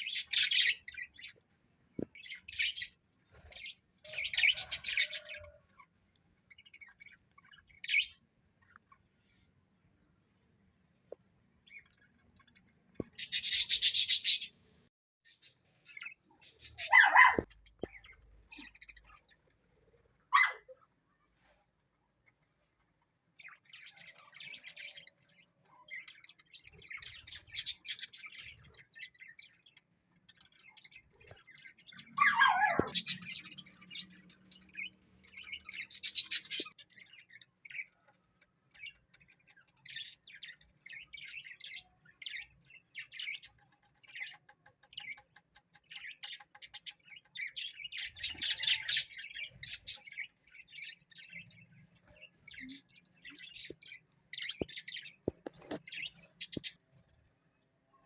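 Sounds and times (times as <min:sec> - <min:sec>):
parrot chirping and chatter: 0:00.0 - 0:01.4, 0:02.0 - 0:09.5, 0:11.6 - 0:14.6, 0:15.3 - 0:21.3, 0:22.2 - 0:57.0
parrot squawks: 0:16.8 - 0:17.5, 0:20.3 - 0:20.7, 0:32.2 - 0:33.1.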